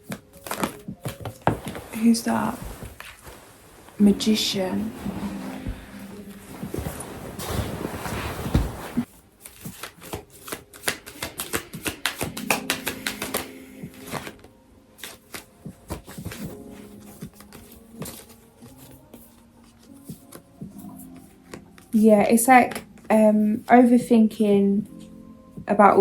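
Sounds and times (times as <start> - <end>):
cards being shuffled: 0.0 - 2.0, 6.7 - 19.0
card taps and slides: 5.0 - 18.4.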